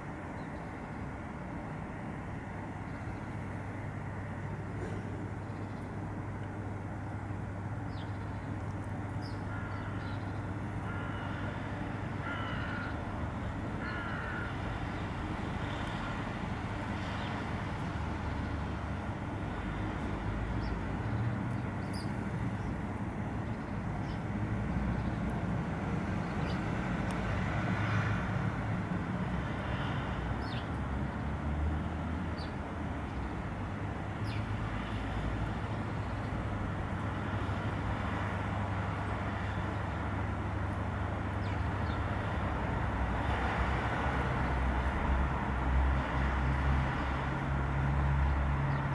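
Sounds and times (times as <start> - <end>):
crow cawing: 9.5 - 10.0, 10.8 - 11.6, 12.2 - 13.0, 13.8 - 14.6.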